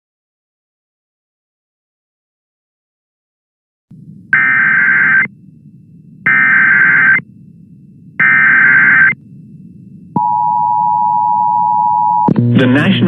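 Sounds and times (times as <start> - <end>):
digital data tone bursts: 4.4 - 5.3, 6.2 - 7.2, 8.2 - 9.2.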